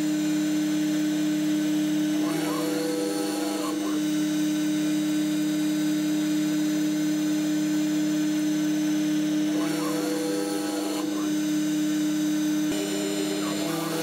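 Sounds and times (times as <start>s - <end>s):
wood router spindle milling: 0.0s - 14.0s.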